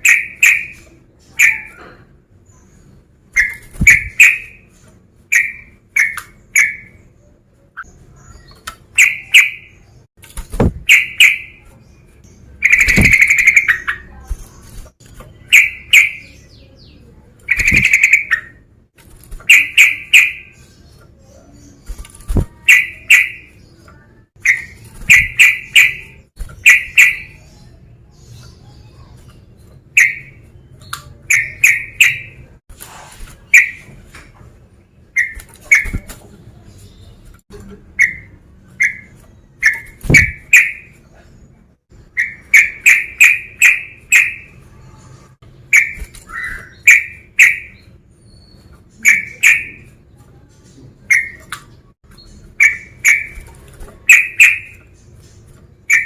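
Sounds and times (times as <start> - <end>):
bird chattering: 0.0 - 2.0, 3.4 - 4.7, 5.3 - 7.1, 7.7 - 10.0, 10.6 - 11.8, 12.4 - 14.7, 15.3 - 18.7, 19.4 - 32.6, 33.4 - 34.0, 37.9 - 41.0, 42.0 - 44.7, 45.6 - 50.1, 50.9 - 56.0
bulbul calling: 0.0 - 2.0, 3.4 - 4.7, 5.3 - 7.1, 7.8 - 9.9, 10.6 - 11.7, 12.6 - 14.2, 15.4 - 16.8, 17.5 - 18.7, 19.4 - 20.8, 22.2 - 23.6, 24.4 - 27.8, 29.9 - 30.4, 31.0 - 32.6, 33.5 - 34.0, 38.0 - 41.0, 42.0 - 44.6, 45.7 - 50.0, 51.1 - 51.5, 52.2 - 55.0.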